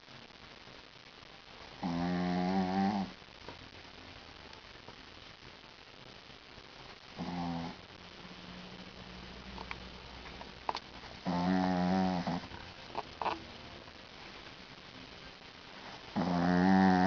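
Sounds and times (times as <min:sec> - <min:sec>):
small dog snoring: 0:01.8 - 0:03.2, 0:07.1 - 0:07.9, 0:11.2 - 0:13.4, 0:16.1 - 0:17.0.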